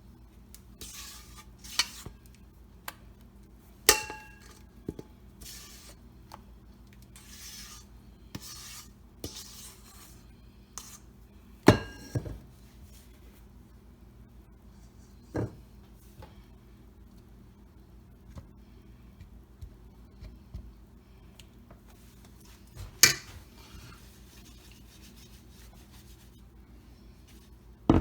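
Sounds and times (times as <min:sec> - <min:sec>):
spatula scraping batter from bowl: 0:00.8 - 0:02.2, 0:05.4 - 0:06.0, 0:07.2 - 0:10.2, 0:10.8 - 0:11.1.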